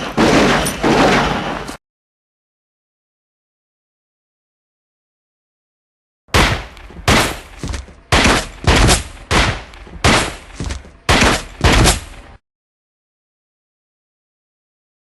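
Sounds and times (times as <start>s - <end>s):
echoing gunshots: 6.3s - 12.4s.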